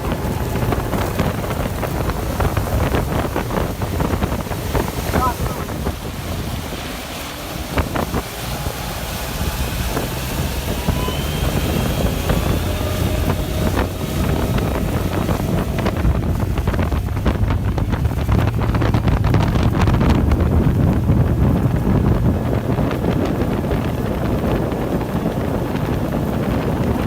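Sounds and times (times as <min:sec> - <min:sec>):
low boat rumble: 0:00.0 - 0:27.0
wind rushing over microphone: 0:00.0 - 0:27.0
faint rising whine: 0:05.9 - 0:20.1.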